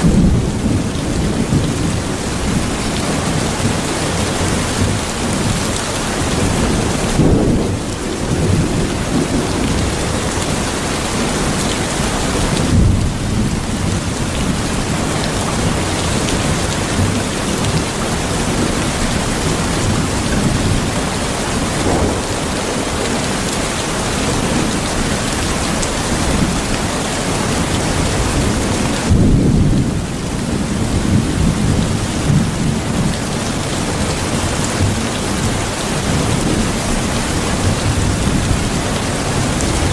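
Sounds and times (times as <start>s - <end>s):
low rolling thunder: 0.0s - 11.5s, 12.4s - 26.8s, 27.5s - 33.3s
heavy rain: 0.0s - 39.9s.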